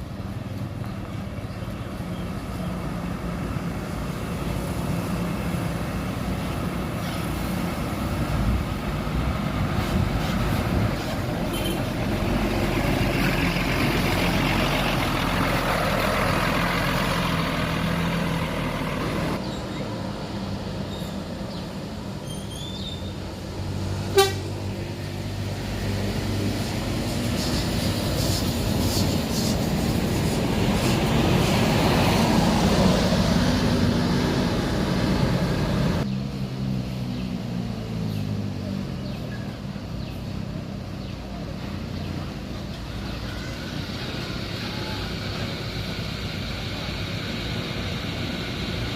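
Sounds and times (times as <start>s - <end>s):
buses driving past: 0.0s - 48.9s
bus horn toot: 11.5s - 11.9s, 24.1s - 24.6s.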